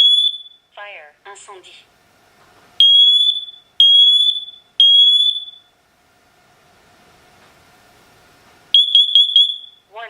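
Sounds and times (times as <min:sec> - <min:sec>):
loud high-pitched alarm beep: 0:00.0 - 0:00.7, 0:02.8 - 0:05.7, 0:08.8 - 0:09.9
faint steady hum: 0:00.0 - 0:10.0.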